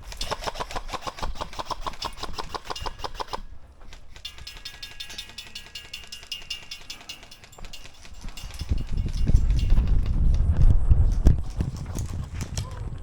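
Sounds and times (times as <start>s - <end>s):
airsoft gun firing: 0.0s - 9.7s.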